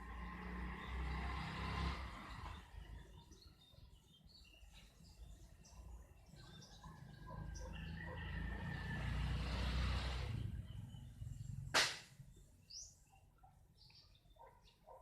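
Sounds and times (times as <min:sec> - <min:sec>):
rushing outdoor noise: 0:06.9 - 0:12.2
sharp knock: 0:11.8 - 0:12.1.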